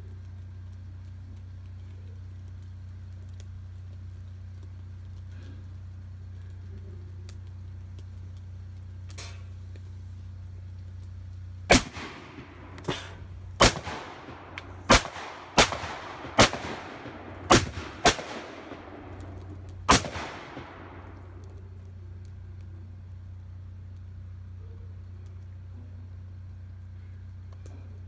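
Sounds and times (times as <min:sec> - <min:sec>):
loud explosive bangs with echo: 0:11.7 - 0:21.4.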